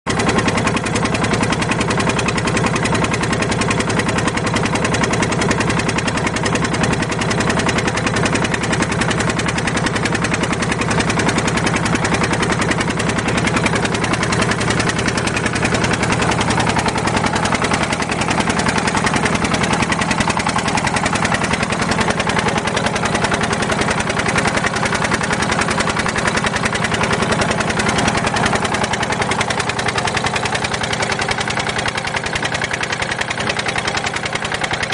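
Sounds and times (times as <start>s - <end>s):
engine chugging steadily: 0.0s - 34.9s.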